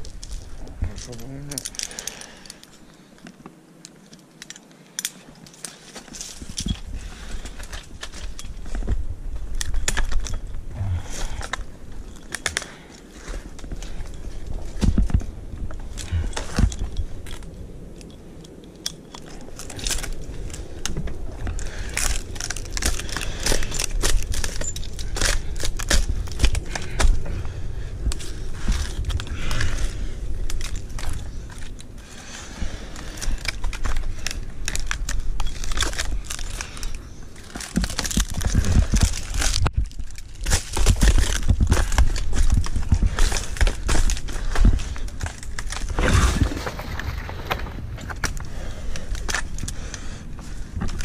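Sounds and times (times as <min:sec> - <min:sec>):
wind rumbling on microphone: 0:00.0 - 0:03.8, 0:06.0 - 0:51.0
dry palm fronds crackling: 0:00.0 - 0:51.0
small metallic clinks: 0:00.2 - 0:02.9.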